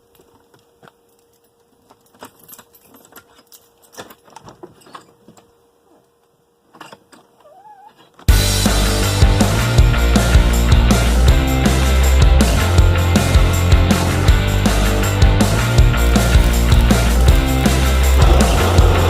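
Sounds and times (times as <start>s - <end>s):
loud rock music: 8.3s - 19.0s.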